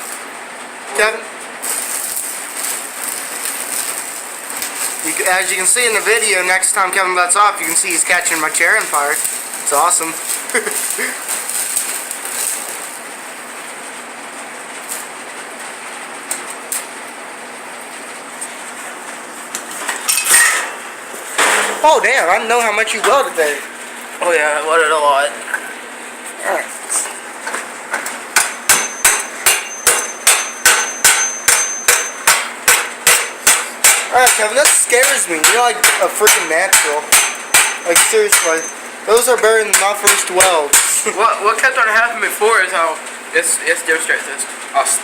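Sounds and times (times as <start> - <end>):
welding arc crackling: 0.0 - 45.0
sharp welding pops: 1.6 - 13.5, 14.8 - 15.1, 16.2 - 17.0, 19.5 - 23.6, 27.4 - 41.2
chipping hammer striking steel: 28.3 - 38.8, 39.6 - 41.0.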